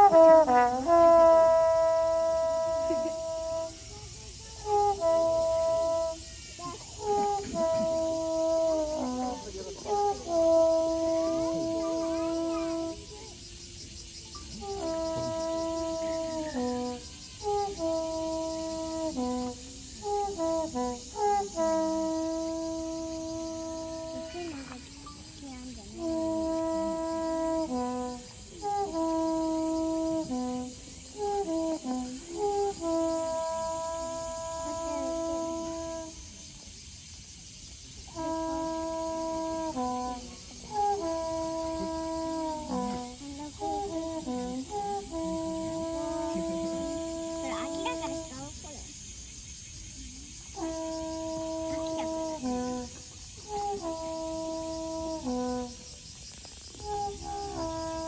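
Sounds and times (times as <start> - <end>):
horn playing melody: 0.0 - 36.7, 38.0 - 48.9, 50.4 - 58.0
deer calling horn: 14.6 - 17.0.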